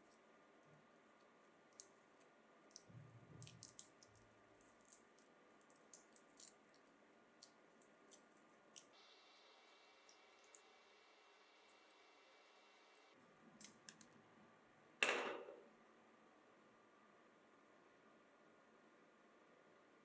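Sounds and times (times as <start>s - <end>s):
faint small clicks and taps: 0.0s - 14.2s
background hiss: 0.0s - 14.8s.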